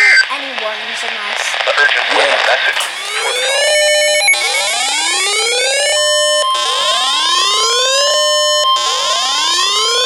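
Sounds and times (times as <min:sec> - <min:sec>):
steady warning alarm tone: 0:02.7 - 0:10.0
rising electronic alarm whoops: 0:03.0 - 0:10.0.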